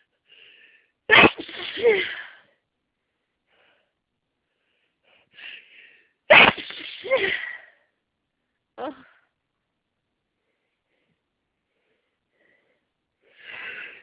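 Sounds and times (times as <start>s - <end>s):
person sneezing: 1.1s - 2.4s, 6.3s - 7.8s
intake of breath: 3.5s - 6.2s, 10.4s - 14.0s.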